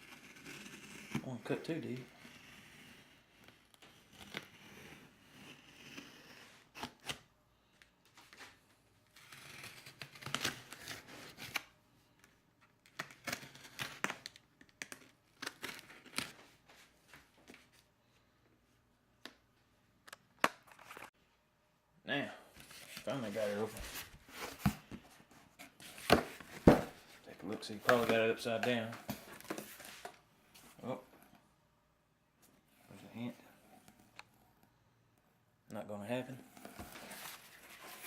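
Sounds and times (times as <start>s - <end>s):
blade cutting cardboard and tape: 0.0s - 7.2s, 9.1s - 11.7s.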